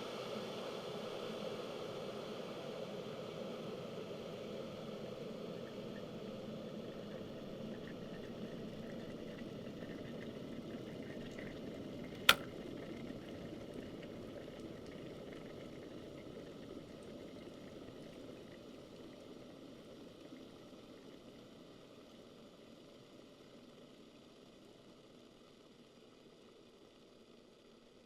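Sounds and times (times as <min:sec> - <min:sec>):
kettle water boiling: 0:04.6 - 0:20.3.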